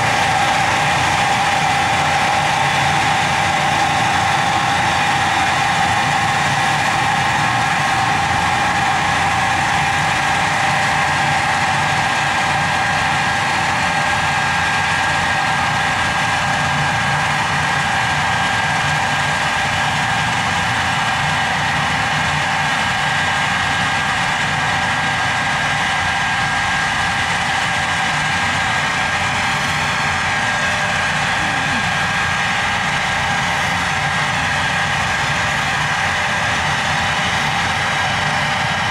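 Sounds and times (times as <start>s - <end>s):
machine droning: 0.0s - 38.9s
high whine: 27.1s - 38.9s.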